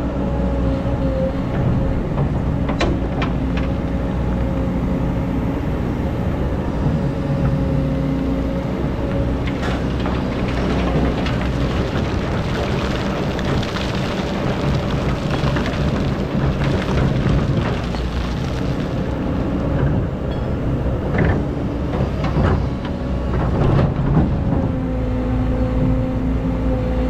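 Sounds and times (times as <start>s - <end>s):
excavator diesel engine running: 0.0s - 27.0s
gravel rattling in bucket: 9.2s - 19.8s.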